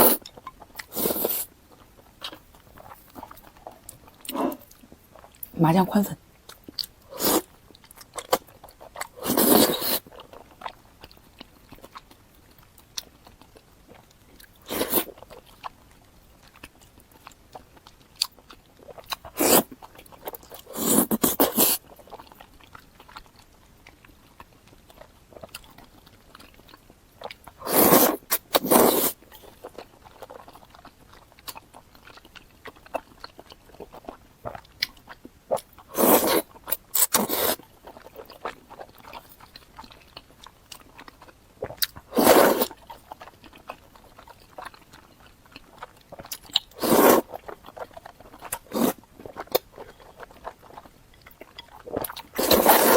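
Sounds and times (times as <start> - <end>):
quiet chewing: 0.0 - 5.6, 6.3 - 52.9
loud bursts of mouth noise: 46.8 - 47.2.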